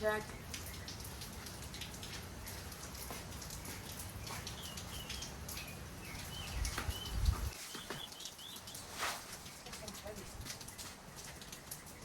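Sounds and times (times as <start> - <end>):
steady rain: 0.0 - 12.0
small bird chirping: 3.6 - 10.9.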